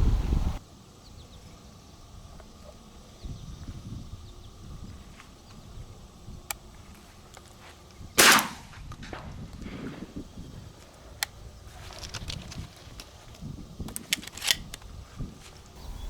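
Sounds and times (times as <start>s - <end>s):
shotgun shot with echo: 8.2s - 8.7s.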